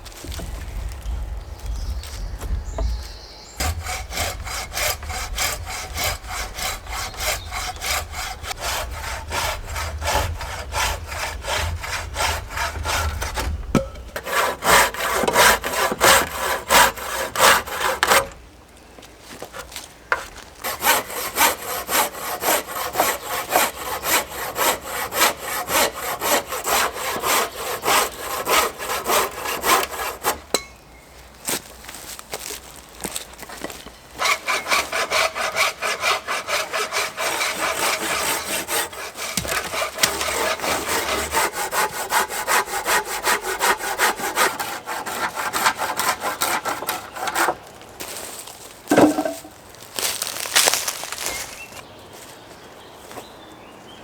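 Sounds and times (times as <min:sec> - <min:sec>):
hand saw cutting wood: 0:02.7 - 0:18.4, 0:19.4 - 0:30.6, 0:33.6 - 0:51.8.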